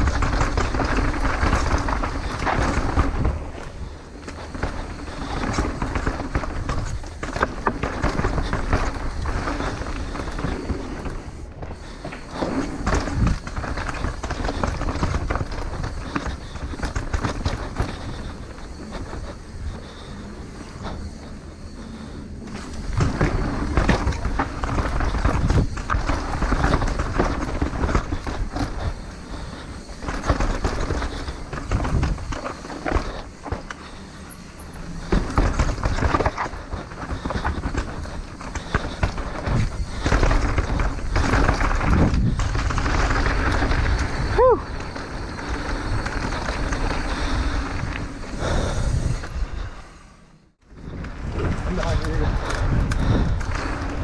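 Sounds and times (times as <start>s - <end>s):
bike rattling and knocking: 0.0s - 49.7s, 50.5s - 54.0s
bike tyres rumbling on trail: 0.0s - 54.0s
rush of wind: 0.0s - 54.0s.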